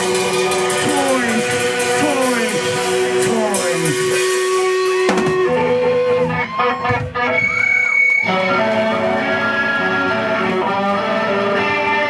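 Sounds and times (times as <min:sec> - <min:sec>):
drum kit: 0:00.0 - 0:06.3
electric guitar bent notes: 0:00.0 - 0:10.1.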